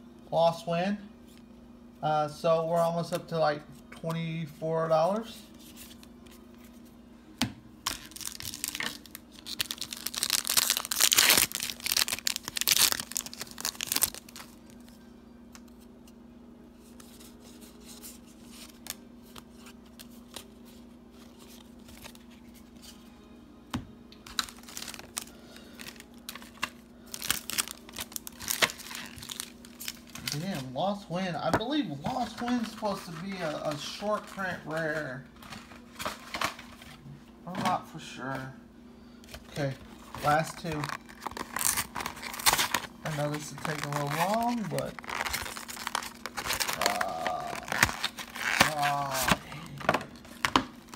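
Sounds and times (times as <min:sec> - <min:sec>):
foil wrapper tearing and crinkling: 0:07.8 - 0:14.9, 0:24.2 - 0:30.7, 0:40.0 - 0:50.9.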